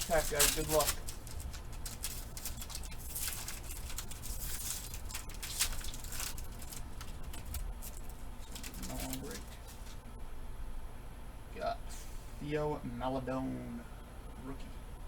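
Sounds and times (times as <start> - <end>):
card pack tearing and crinkling: 0.0 - 10.0
cards rustling: 0.0 - 10.0.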